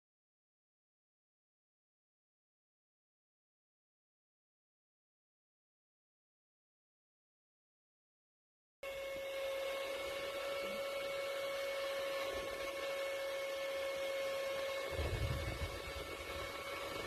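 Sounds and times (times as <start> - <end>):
small fan motor whine: 8.8 - 17.0
low rumble: 14.9 - 16.0.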